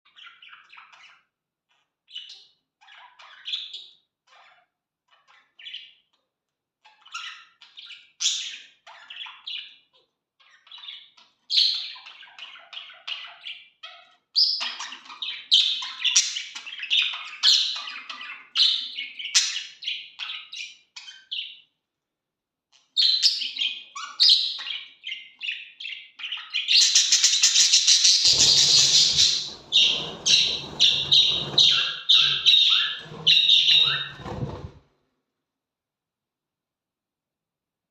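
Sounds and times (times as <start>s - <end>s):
budgerigars chirping and warbling: 24.6s - 34.6s.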